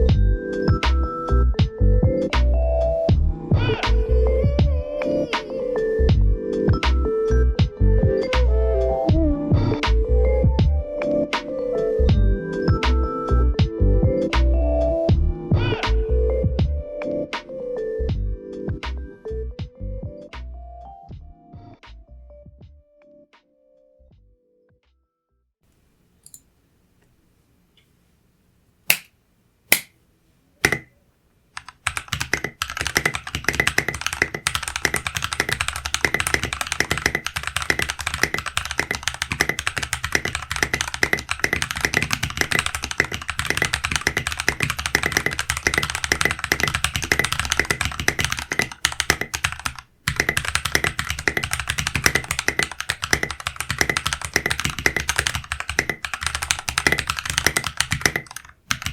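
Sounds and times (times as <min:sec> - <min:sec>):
typing on mechanical keyboard: 0:30.6 - 0:30.9, 0:31.6 - 0:58.9.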